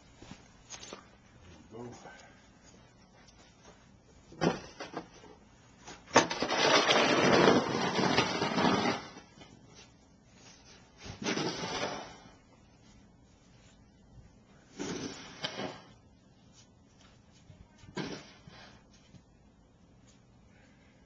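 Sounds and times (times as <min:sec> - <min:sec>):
snow shovel scraping through snow: 0:06.3 - 0:09.2, 0:11.2 - 0:12.3.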